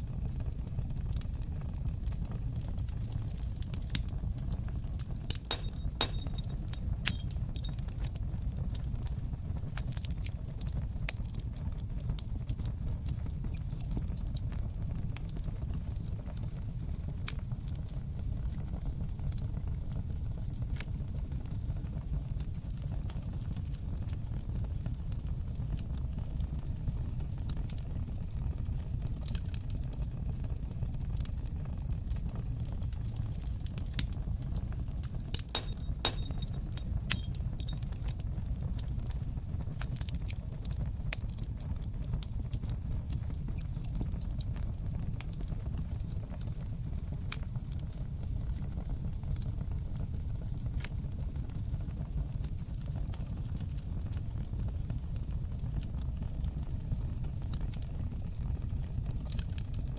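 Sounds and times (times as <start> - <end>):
fire crackling and popping: 0.0 - 59.9
low rumble of flames: 0.0 - 59.9.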